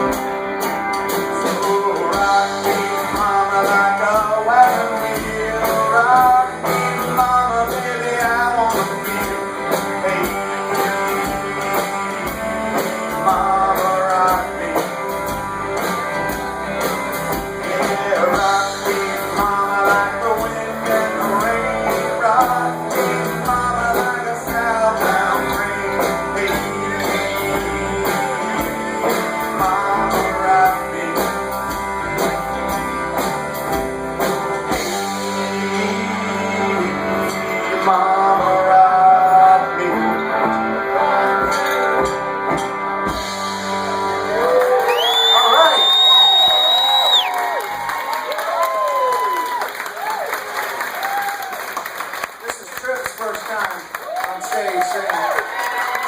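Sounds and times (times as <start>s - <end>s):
guitar melody: 0.0s - 44.8s
live band music: 0.0s - 56.0s.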